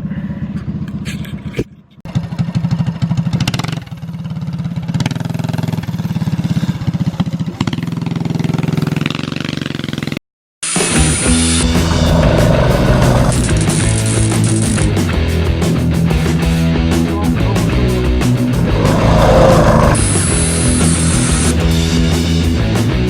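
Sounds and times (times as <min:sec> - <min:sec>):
small petrol engine revving: 0:02.1 - 0:10.2, 0:11.2 - 0:14.8, 0:18.1 - 0:22.1.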